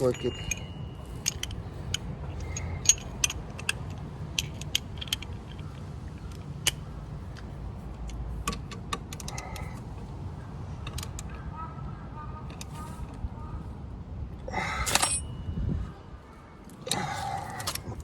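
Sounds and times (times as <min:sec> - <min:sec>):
hand tools clinking on metal: 0:00.0 - 0:05.6, 0:14.6 - 0:15.3.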